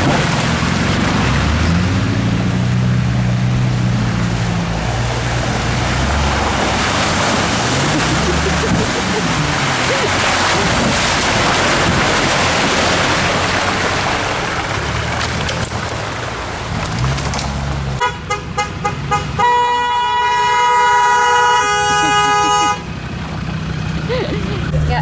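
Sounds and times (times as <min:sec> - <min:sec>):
engine running: 0:00.0 - 0:25.0
vehicle horn beeping: 0:18.0 - 0:23.0.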